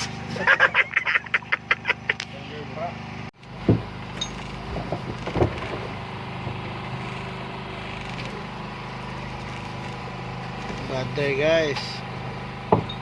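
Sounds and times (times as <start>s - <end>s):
boat engine humming: 0.0s - 13.0s
sharp knocks: 3.6s - 6.0s, 12.7s - 13.0s.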